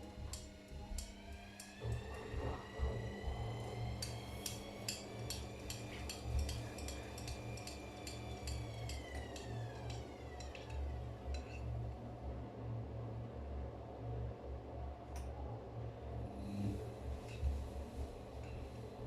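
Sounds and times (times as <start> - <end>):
washing machine spinning: 0.0 - 13.9
fast light metallic ticks: 4.0 - 11.5.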